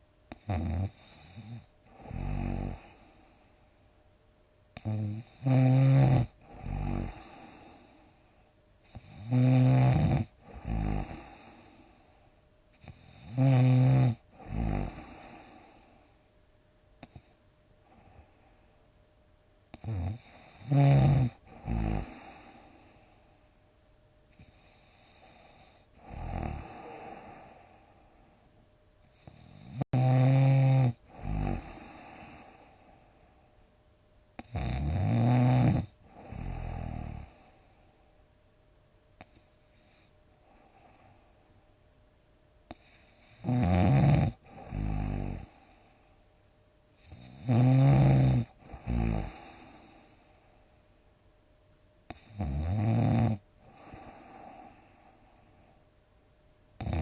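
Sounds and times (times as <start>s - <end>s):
quiet breathing: 0.0s - 38.4s, 39.1s - 41.8s, 42.6s - 51.3s, 53.4s - 57.0s
person snoring: 0.3s - 3.5s, 4.8s - 8.2s, 8.8s - 16.1s, 19.7s - 23.2s, 24.3s - 28.2s, 29.1s - 33.1s, 34.4s - 37.8s, 42.7s - 46.0s, 47.0s - 50.4s, 52.1s - 55.5s, 56.8s - 57.0s.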